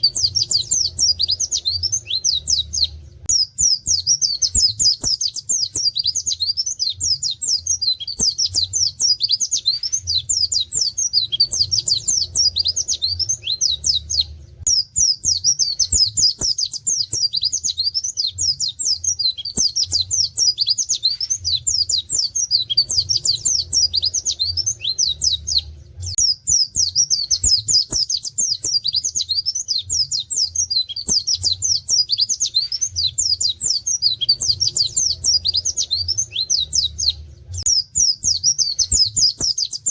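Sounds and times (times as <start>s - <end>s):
bird singing high slurred notes: 0.0s - 39.9s.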